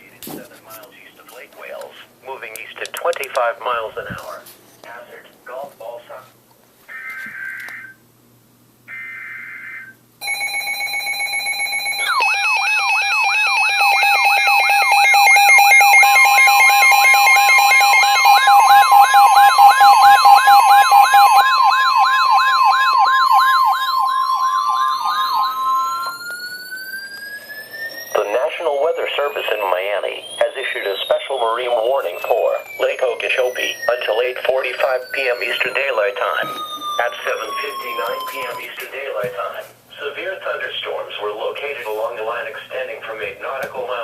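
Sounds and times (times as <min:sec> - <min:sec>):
warbling siren-like alarm: 0:06.9 - 0:08.0, 0:08.9 - 0:38.9
digital data bursts: 0:23.2 - 0:38.8.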